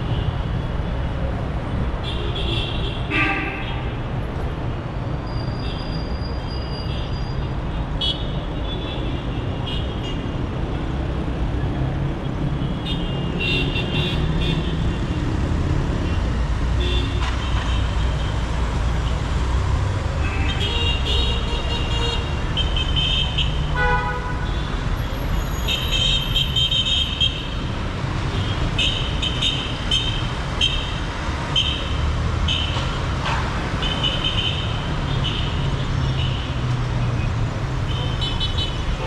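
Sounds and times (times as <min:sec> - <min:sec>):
traffic engines rumbling: 0:00.0 - 0:39.0
vehicle horns honking: 0:20.2 - 0:24.7.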